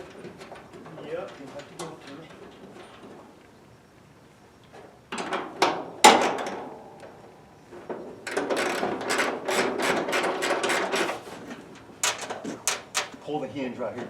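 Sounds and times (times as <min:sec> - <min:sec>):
hood hinges rattling and scraping: 0:00.0 - 0:03.3, 0:07.7 - 0:13.3.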